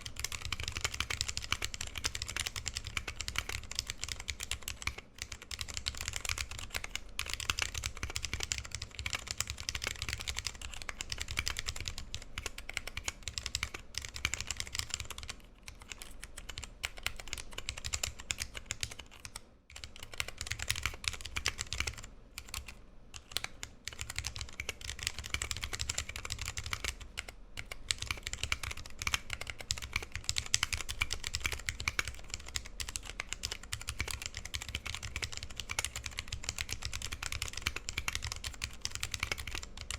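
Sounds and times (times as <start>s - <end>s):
fast typing on mechanical keyboard: 0.0s - 39.9s.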